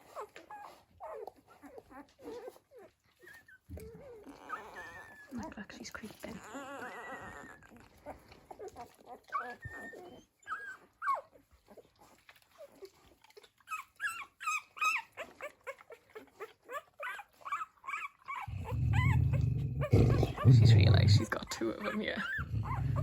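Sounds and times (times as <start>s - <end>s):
puppies squeaking: 0.0s - 23.0s
dog growling: 3.7s - 10.2s, 17.8s - 23.0s.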